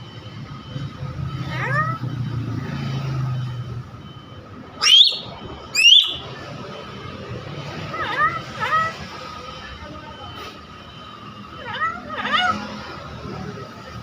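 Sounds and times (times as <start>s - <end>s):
myna calling: 1.4s - 2.0s, 4.8s - 6.4s, 7.8s - 9.1s, 11.6s - 12.7s
rising whistles: 4.8s - 6.3s.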